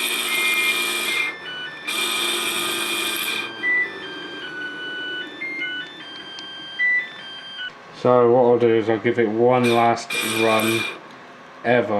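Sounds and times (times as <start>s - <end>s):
electric motor whine: 0.0s - 7.7s, 9.6s - 11.1s.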